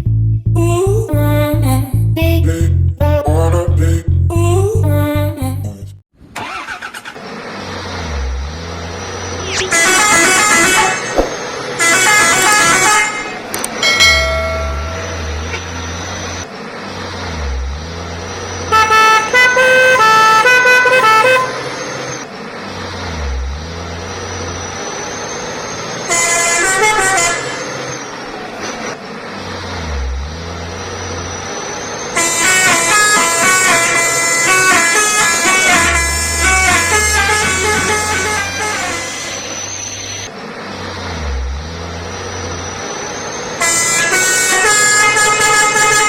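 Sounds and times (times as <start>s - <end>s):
multi-tone air horn tunes: 9.7s - 11.1s, 11.8s - 13.4s, 18.7s - 21.6s, 26.1s - 27.6s, 32.2s - 39.6s, 43.6s - 46.0s.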